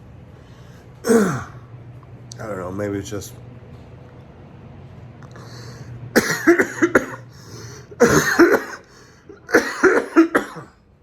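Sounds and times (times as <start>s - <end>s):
man coughing: 1.0s - 1.6s, 6.2s - 10.8s.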